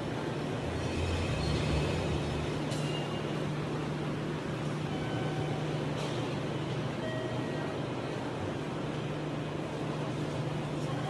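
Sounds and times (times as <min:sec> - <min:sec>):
electric train humming and rumbling: 0:00.0 - 0:11.0.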